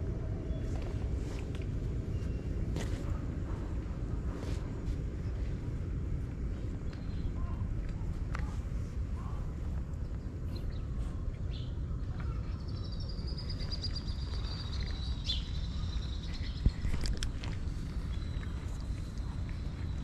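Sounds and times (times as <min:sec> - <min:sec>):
low outdoor rumble: 0:00.0 - 0:20.0
high-pitched wavering bird chirp: 0:12.3 - 0:17.0.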